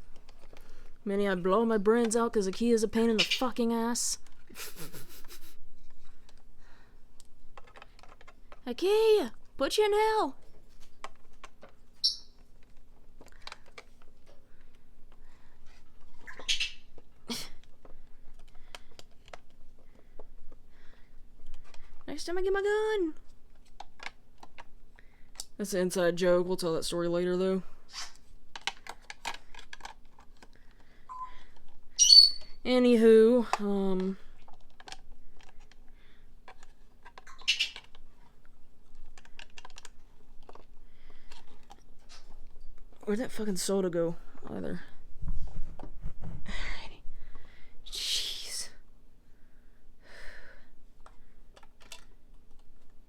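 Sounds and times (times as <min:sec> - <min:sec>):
plastic parts clicking and tapping: 0:07.2 - 0:08.7, 0:10.8 - 0:16.3, 0:16.9 - 0:20.7, 0:23.5 - 0:25.6, 0:28.5 - 0:31.8, 0:33.3 - 0:43.0, 0:51.0 - 0:53.0
plastic toy pieces clicking: 0:28.6 - 0:30.8, 0:39.0 - 0:40.7.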